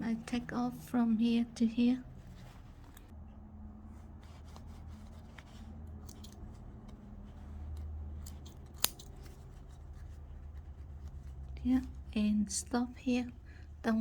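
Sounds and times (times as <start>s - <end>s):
low steady hum: 0.0s - 14.0s
threads being snipped: 7.7s - 9.2s.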